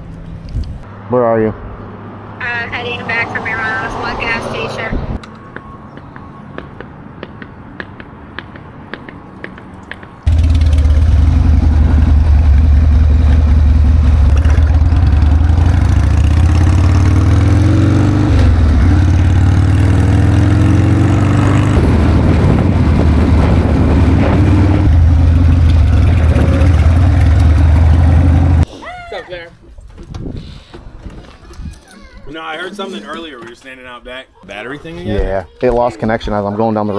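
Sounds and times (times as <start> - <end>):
motorcycle engine shifting gears: 9.8 - 28.7
wind noise: 19.8 - 26.8, 29.8 - 31.8.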